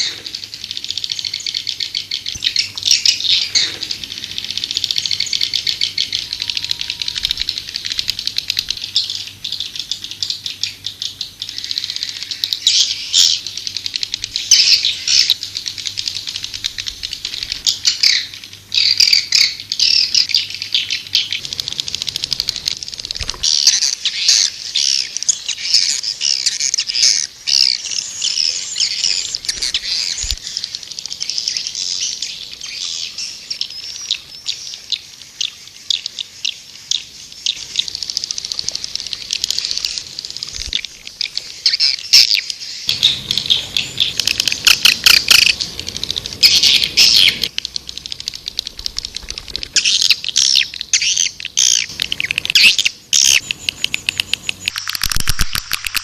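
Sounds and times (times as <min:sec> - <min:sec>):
swiftlet chirps and trills: 0:37.6 - 0:56.0.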